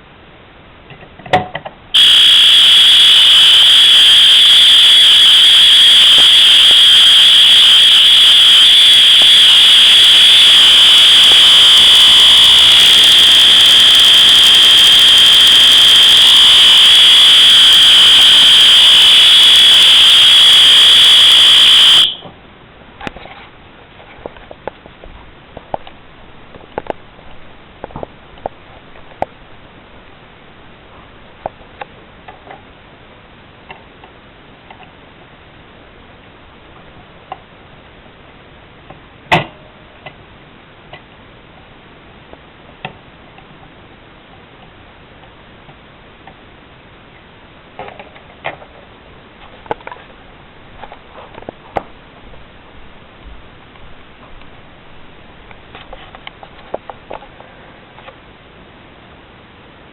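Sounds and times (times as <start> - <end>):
fire alarm horn high tone: 2.0 - 22.2.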